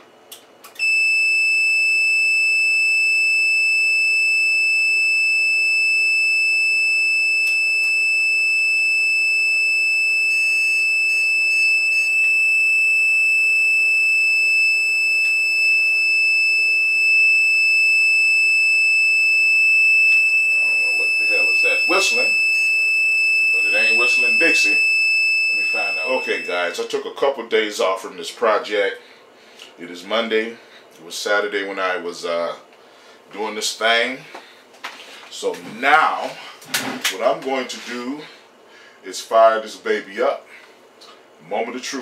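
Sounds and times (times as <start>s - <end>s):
high-pitched whistling tone: 20.1s - 22.8s, 23.5s - 26.8s.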